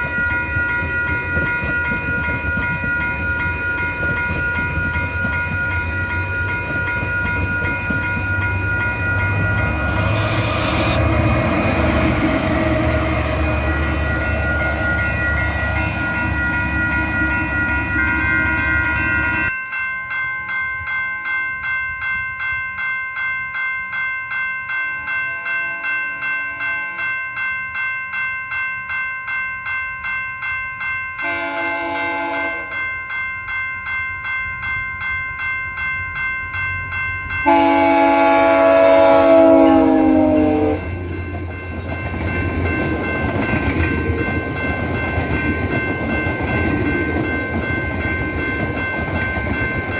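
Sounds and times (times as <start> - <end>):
train rumble: 0.0 - 19.6, 33.9 - 49.9
railway crossing bell ringing: 0.0 - 49.9
train horn blast: 31.2 - 32.8, 37.4 - 41.0.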